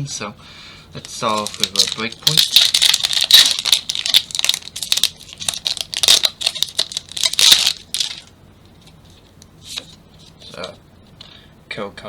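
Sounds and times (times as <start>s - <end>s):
foil wrapper tearing and crinkling: 1.1s - 8.3s.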